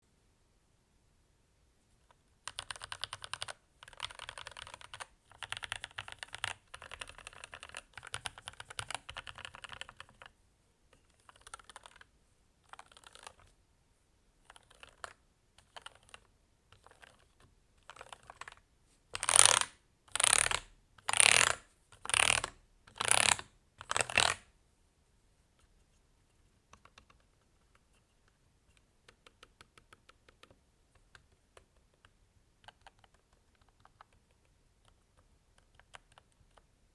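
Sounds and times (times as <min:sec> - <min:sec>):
mechanical keyboard typing: 0:02.4 - 0:10.4, 0:11.0 - 0:13.5, 0:14.4 - 0:18.6, 0:19.2 - 0:24.4, 0:26.7 - 0:36.7
rapid keyboard clatter bursts: 0:02.5 - 0:10.3.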